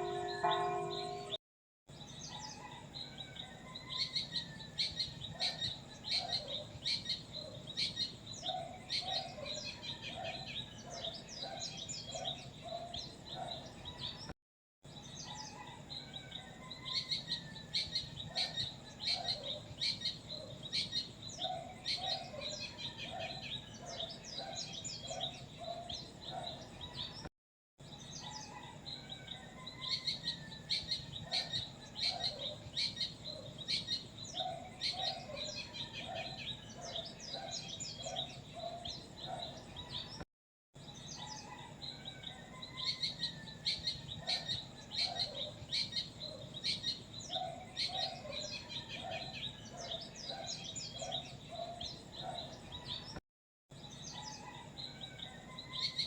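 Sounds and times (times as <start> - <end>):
low-pitched bird calls: 0.0 - 1.4
small songbirds chirping: 0.0 - 14.3, 14.9 - 40.2, 40.8 - 56.0.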